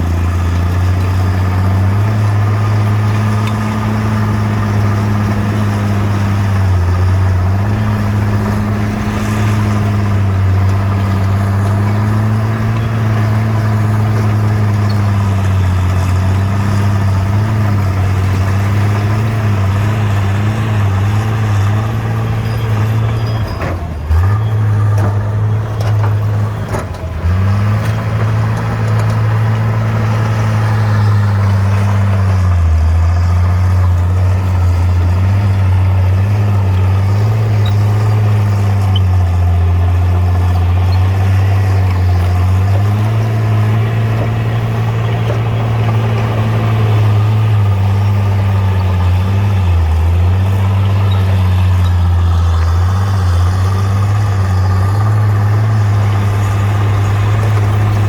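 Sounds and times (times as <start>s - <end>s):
bulldozer diesel engine running: 0.0s - 58.0s.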